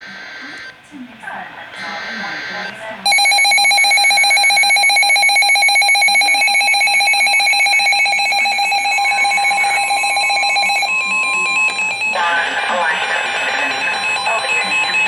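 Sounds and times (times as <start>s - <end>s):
warbling two-tone alert tone: 3.1s - 15.0s.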